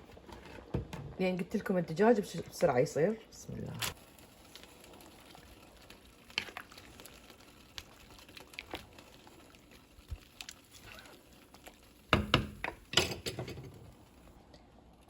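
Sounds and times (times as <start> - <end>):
water boiling: 0.0 - 15.0
food splashing into a pot: 4.4 - 13.9.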